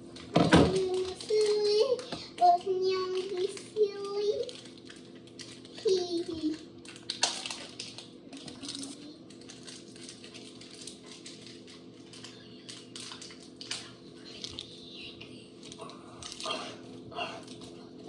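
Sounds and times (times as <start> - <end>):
slime crackling and clicking: 3.1 - 14.7.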